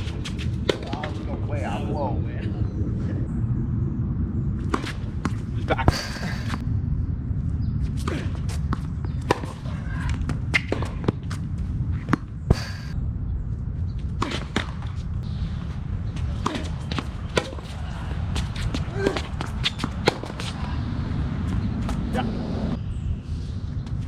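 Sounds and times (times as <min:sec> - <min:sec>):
low rumble: 0:00.0 - 0:24.0
rackets striking tennis ball: 0:08.0 - 0:11.4, 0:16.2 - 0:20.6.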